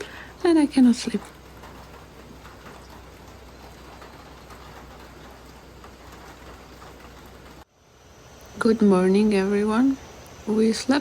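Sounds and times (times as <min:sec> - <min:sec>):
steady rain falling: 0:00.0 - 0:11.0.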